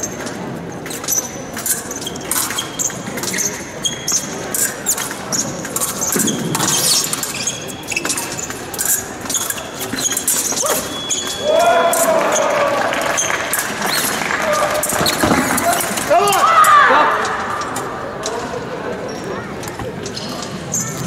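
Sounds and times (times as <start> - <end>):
fencing blades clashing: 0.0 - 12.4, 13.2 - 18.7
shoes squeaking and stepping: 0.8 - 11.4, 19.0 - 21.0.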